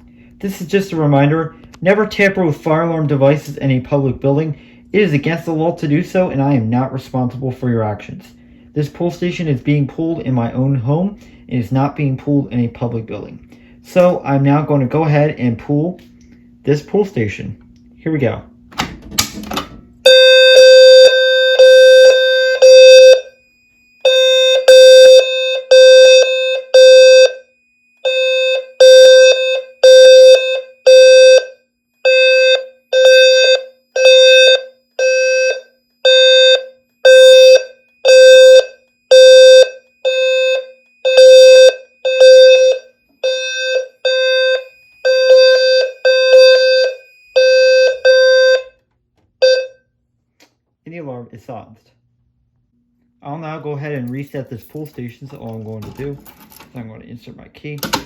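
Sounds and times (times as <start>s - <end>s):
pulsing low buzzy alarm horn: 20.0s - 48.8s, 49.4s - 49.9s.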